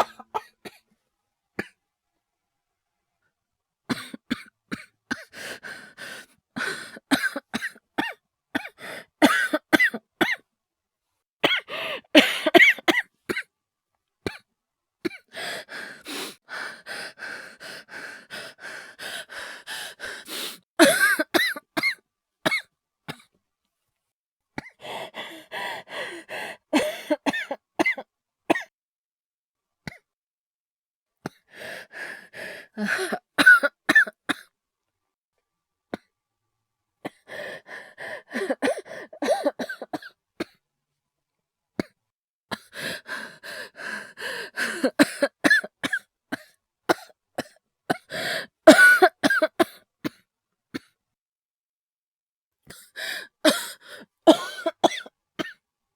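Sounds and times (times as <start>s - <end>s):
man coughing: 0.0s - 0.8s, 20.8s - 22.6s, 32.9s - 34.1s, 48.7s - 49.7s, 54.3s - 55.6s.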